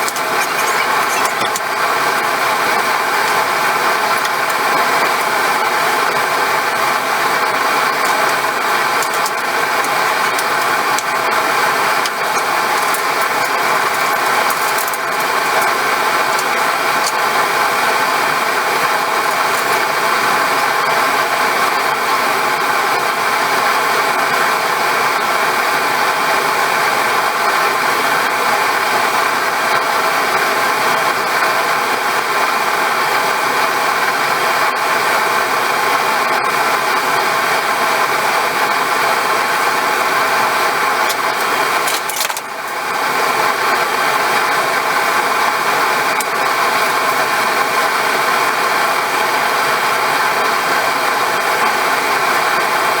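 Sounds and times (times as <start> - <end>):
machine motor hum: 0.0 - 21.1.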